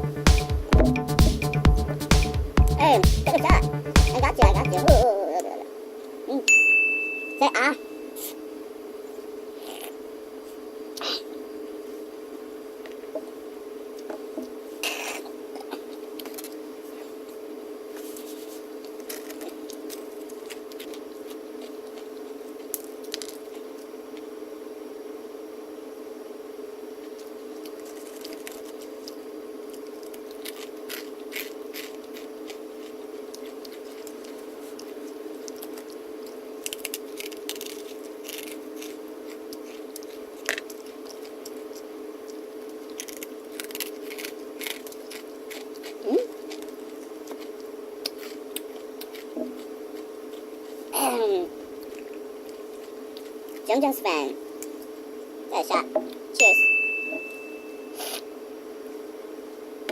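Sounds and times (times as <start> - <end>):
steady hum: 0.0 - 59.9
crunchy chewing: 9.6 - 11.3, 12.8 - 24.4, 26.8 - 55.1.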